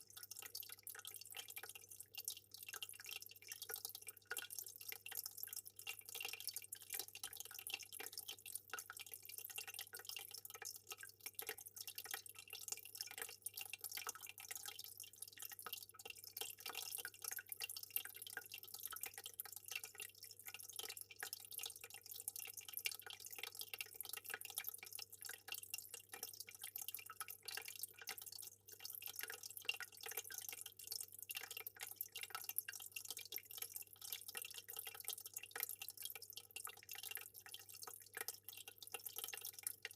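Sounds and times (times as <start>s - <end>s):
water dripping and trickling: 0.0s - 39.9s.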